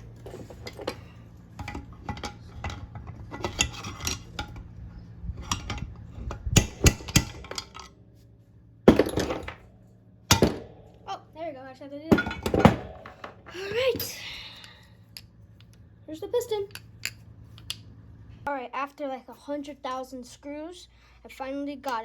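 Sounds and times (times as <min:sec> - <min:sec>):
metal parts clinking and scraping: 0:00.0 - 0:08.0, 0:08.9 - 0:09.7.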